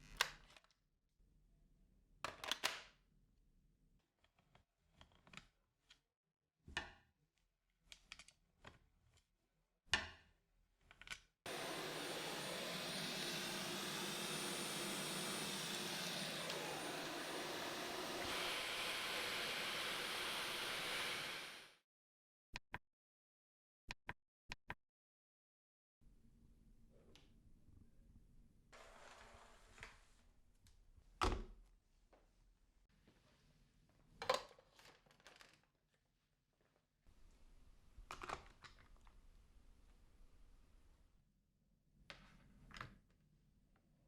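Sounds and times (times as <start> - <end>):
vacuum cleaner motor running: 11.5 - 21.8.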